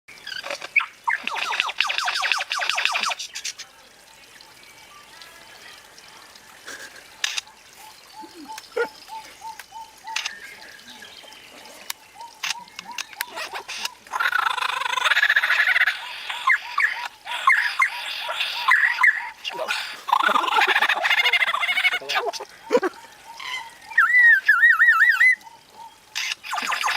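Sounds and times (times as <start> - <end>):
bird warbling laser-like calls: 0.3 - 3.2, 12.2 - 26.9
sharp clicks: 7.2 - 7.5, 11.9 - 14.0.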